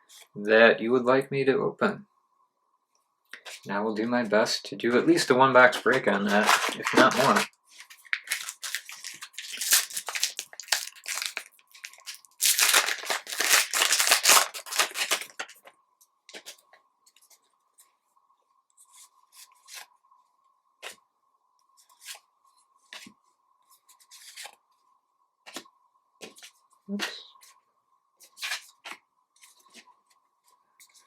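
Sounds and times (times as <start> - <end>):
foil wrapper crinkling and tearing: 5.6 - 15.6.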